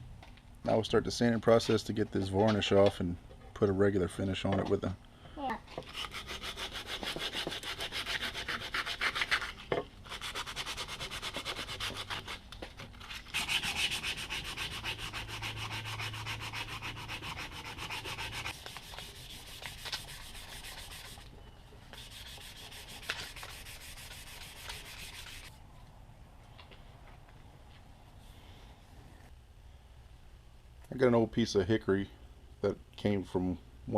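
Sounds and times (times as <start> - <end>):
sanding wooden handle: 5.8 - 12.4, 13.3 - 21.2, 21.9 - 25.5.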